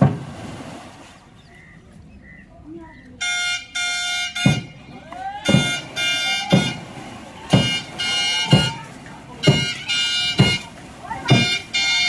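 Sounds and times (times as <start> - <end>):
shrill whistle blasts: 3.2 - 6.8, 7.5 - 8.8, 9.4 - 10.7, 11.3 - 12.0
people shouting: 4.2 - 12.0
heavy thuds: 4.4 - 11.7.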